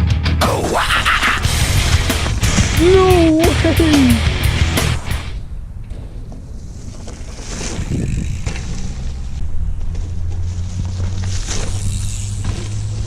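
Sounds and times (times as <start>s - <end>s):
low rumble of tyres: 4.3s - 13.0s
wind rushing over microphone: 5.0s - 10.2s
bike clicks and rattles: 7.0s - 13.0s.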